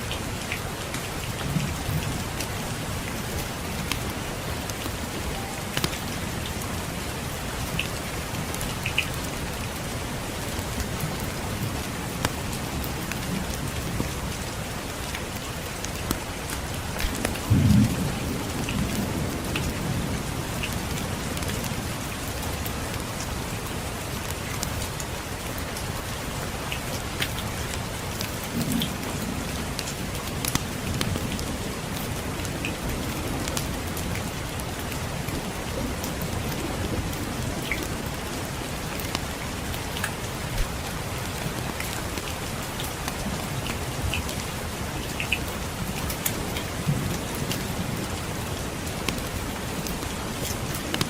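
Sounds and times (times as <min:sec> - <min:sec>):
steady rain: 0:00.0 - 0:51.0
distant thunder rumble: 0:17.1 - 0:21.0.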